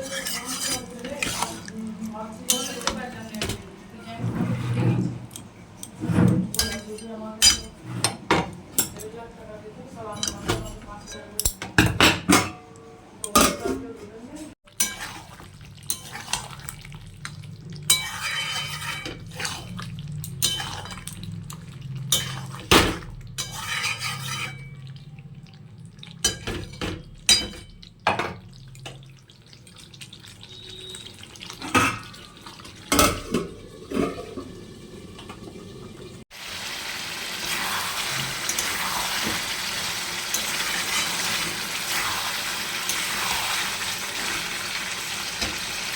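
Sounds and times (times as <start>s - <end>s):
metal utensils clinking on dishes: 0.0s - 1.7s, 2.4s - 3.7s, 5.3s - 9.2s, 10.1s - 13.8s, 17.9s - 21.2s, 22.1s - 24.9s, 26.2s - 28.4s, 38.4s - 39.4s.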